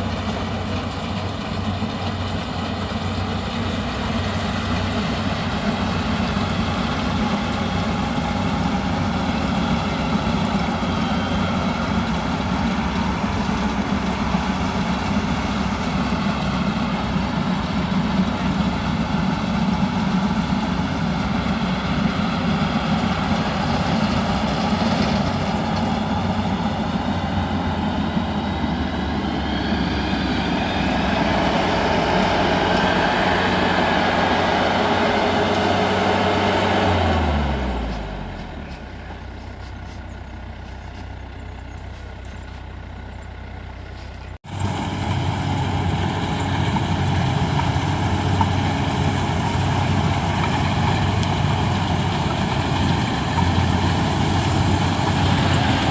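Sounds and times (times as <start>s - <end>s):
combine harvester diesel engine: 0.0s - 55.9s.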